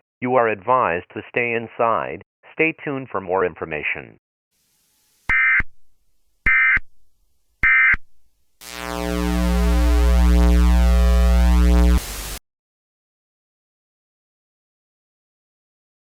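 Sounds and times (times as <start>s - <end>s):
low synthesizer drone: 8.6s - 12.4s
warbling data tone bursts: 8.6s - 12.4s.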